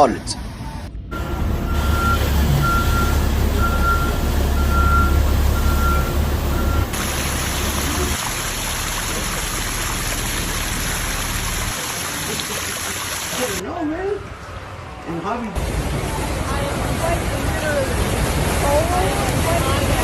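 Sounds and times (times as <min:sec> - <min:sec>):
heavy vehicle engine rumbling: 0:00.0 - 0:11.8
reversing alarm beeping: 0:01.1 - 0:07.0.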